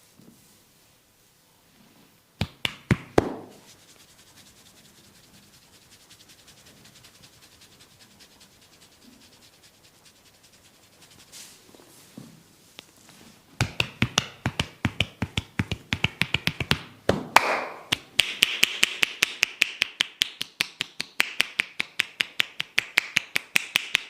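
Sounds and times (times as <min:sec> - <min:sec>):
massage strikes on body: 0:02.4 - 0:03.7, 0:13.6 - 0:18.6
faint rubbing strokes: 0:03.0 - 0:13.5.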